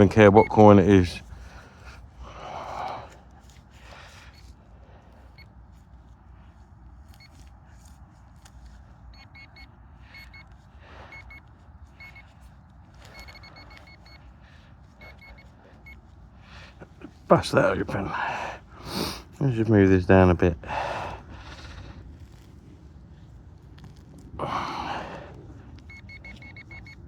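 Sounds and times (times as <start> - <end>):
metal detector beeps: 0.0 - 1.0, 9.1 - 12.4, 13.0 - 14.3, 15.0 - 16.0, 25.8 - 27.0
low rumble of wind: 0.0 - 27.0.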